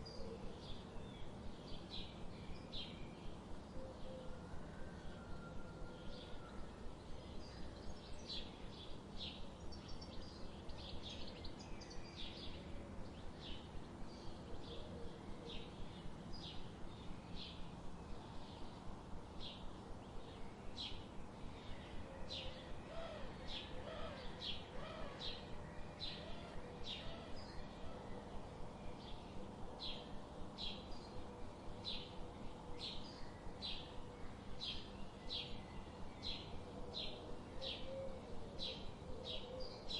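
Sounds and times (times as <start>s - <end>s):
small songbirds chirping: 0.0s - 39.9s
steady background noise: 0.0s - 39.9s.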